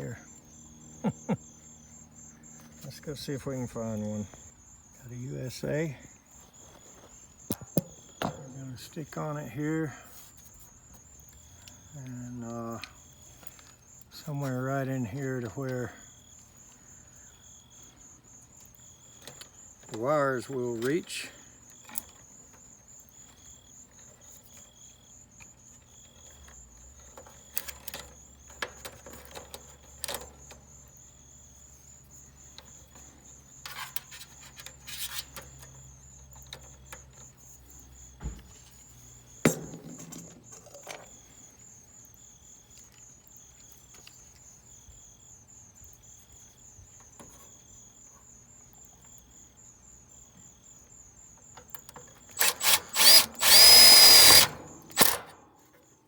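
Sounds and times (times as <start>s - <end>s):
crickets chirping: 0.0s - 56.0s.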